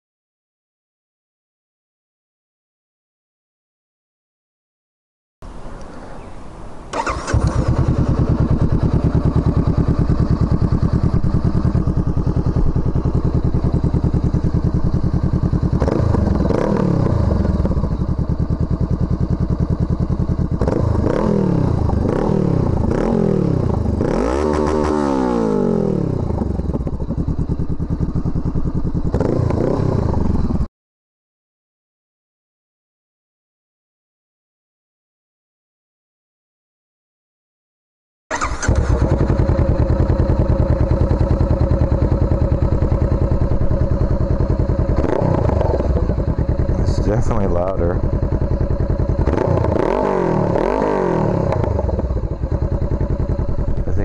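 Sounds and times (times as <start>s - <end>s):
motorcycle engine starting and idling: 5.7s - 30.7s, 38.3s - 54.0s
engine revving: 6.9s - 27.1s, 29.0s - 30.7s, 38.3s - 54.0s.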